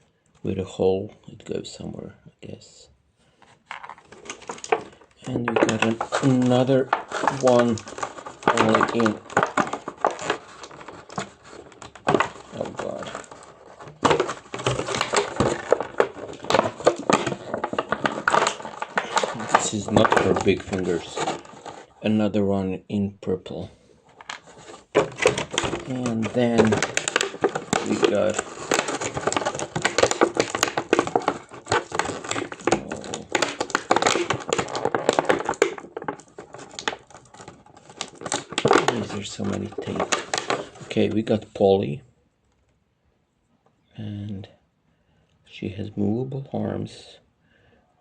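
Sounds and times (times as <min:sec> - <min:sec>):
plastic clicking and crackling: 0:03.7 - 0:21.9, 0:24.1 - 0:41.2.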